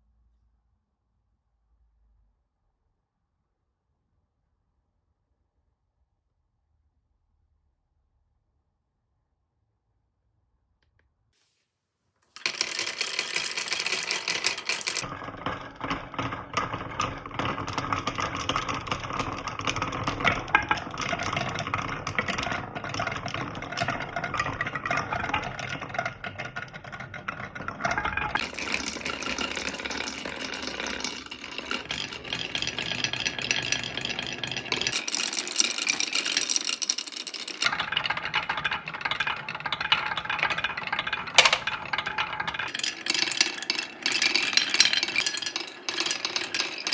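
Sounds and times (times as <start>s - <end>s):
marbles rattling down wooden run: 12.4s - 46.9s.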